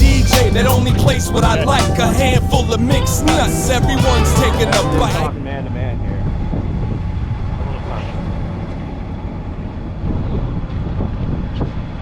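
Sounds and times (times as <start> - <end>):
boat engine running: 0.0 - 5.3
wind noise: 9.7 - 12.0.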